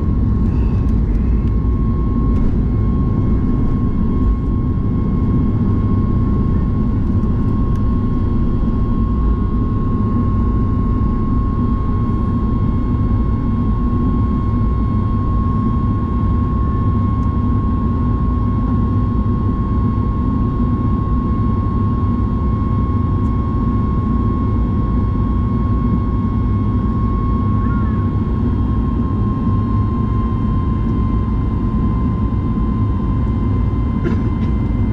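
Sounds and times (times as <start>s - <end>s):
jet engine cabin rumble: 0.0s - 34.9s
thin steady whine: 23.4s - 34.9s.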